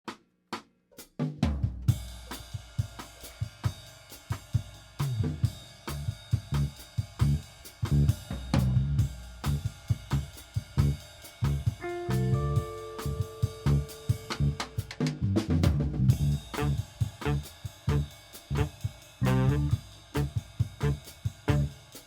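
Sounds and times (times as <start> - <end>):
background music with drum beat: 0.1 - 22.0
bass line: 5.1 - 21.8.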